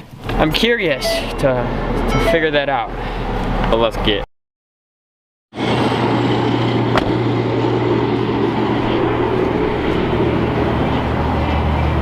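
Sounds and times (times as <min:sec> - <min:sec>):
car engine running: 0:06.0 - 0:11.2.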